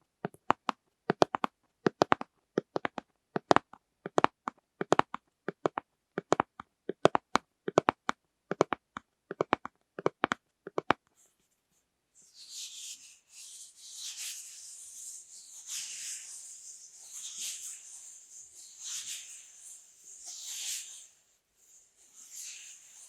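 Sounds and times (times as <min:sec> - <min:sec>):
fingernails tapping on plastic: 0:00.2 - 0:11.0
soft scratchy rubbing: 0:11.1 - 0:23.0.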